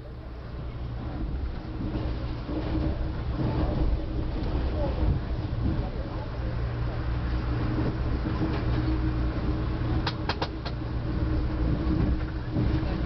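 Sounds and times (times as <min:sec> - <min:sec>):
train rumble inside coach: 0:00.0 - 0:13.0.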